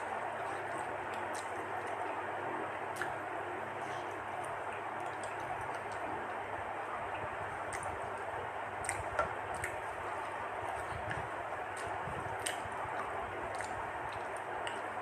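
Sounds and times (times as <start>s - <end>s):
wet chewing: 0.3s - 2.1s, 7.6s - 15.0s.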